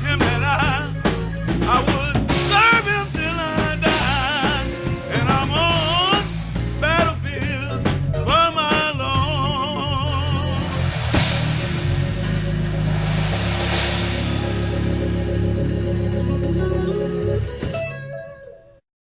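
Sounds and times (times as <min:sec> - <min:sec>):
person singing with vibrato: 0:00.0 - 0:10.9
band playing bass and drums: 0:00.0 - 0:18.2.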